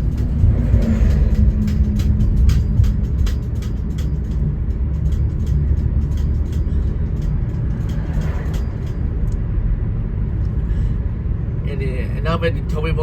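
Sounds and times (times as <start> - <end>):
light clicks and rattles: 0.0 - 9.4
car engine and tyre rumble: 0.0 - 13.0.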